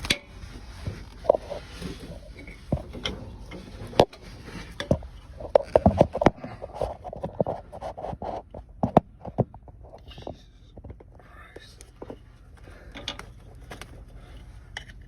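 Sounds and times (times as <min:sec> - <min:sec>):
hands handling plastic connector: 0:11.8 - 0:15.0.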